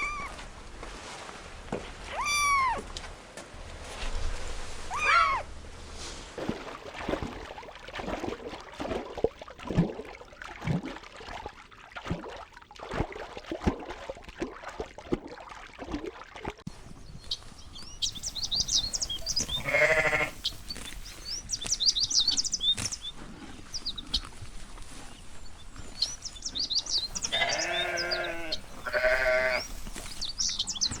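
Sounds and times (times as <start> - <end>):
birds chirping: 17.0 - 31.0
sheep bleating: 19.5 - 20.4, 27.2 - 29.7.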